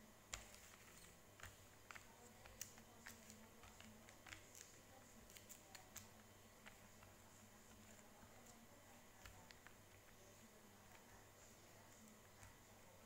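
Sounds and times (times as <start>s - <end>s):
faint small clicks and ticks: 0.3s - 10.2s.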